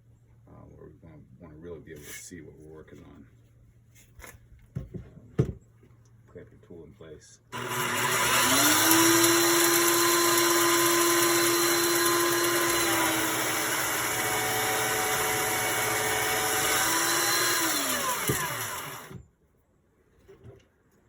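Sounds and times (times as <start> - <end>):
belt sander whining: 7.5 - 19.2.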